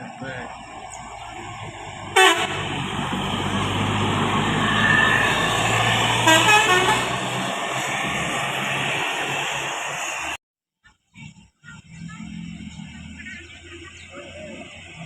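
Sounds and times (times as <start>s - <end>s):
bus engine and road noise: 0.0s - 10.4s, 11.2s - 15.0s
multi-tone bus horn tune: 2.1s - 3.6s, 4.8s - 7.9s.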